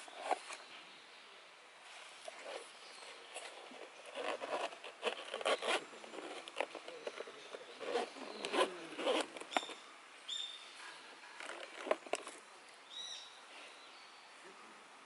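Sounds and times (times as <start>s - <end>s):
rustling: 1.8s - 9.9s, 10.8s - 12.5s
bird calling: 5.2s - 11.0s.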